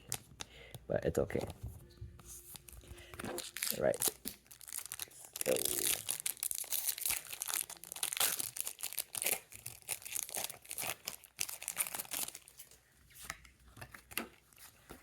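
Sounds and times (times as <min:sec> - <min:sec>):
foil wrapper tearing and crinkling: 0:02.4 - 0:12.8.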